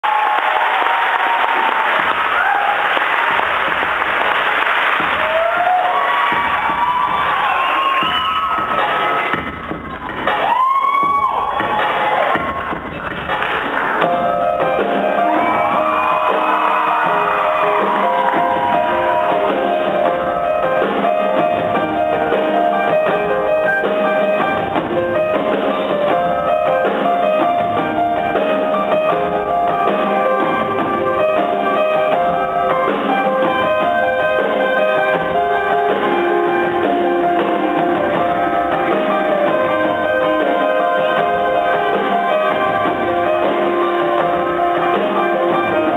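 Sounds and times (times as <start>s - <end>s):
audience applauding: 0.0s - 14.2s, 15.0s - 21.7s
live band music: 0.9s - 45.9s
rapid keyboard notes: 3.3s - 45.9s
whistles: 7.5s - 8.5s.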